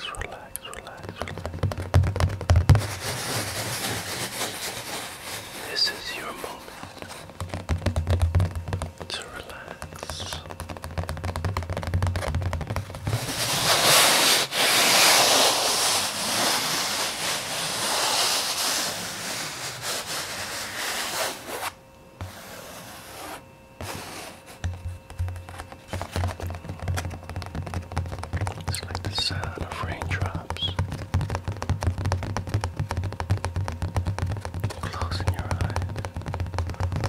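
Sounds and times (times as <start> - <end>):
rapid tapping on microphone: 0.0 - 21.7, 23.8 - 37.0
rough rubbing: 2.7 - 7.4, 12.8 - 24.7.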